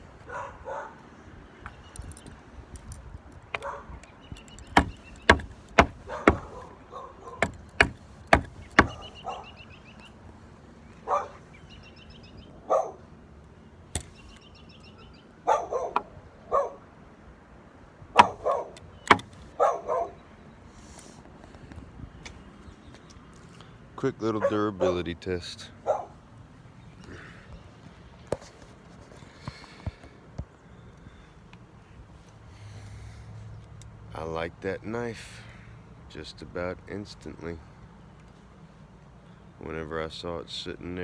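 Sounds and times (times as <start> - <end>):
dog barking: 0.2 - 1.0, 3.6 - 3.9, 6.1 - 7.4, 8.9 - 9.6, 11.0 - 11.4, 12.6 - 13.0, 15.4 - 16.8, 18.2 - 18.8, 19.6 - 20.2, 24.4 - 25.0, 25.8 - 26.2
sharp chopping knocks: 4.7 - 6.6, 7.4 - 9.1, 18.2 - 18.4, 19.1 - 19.3.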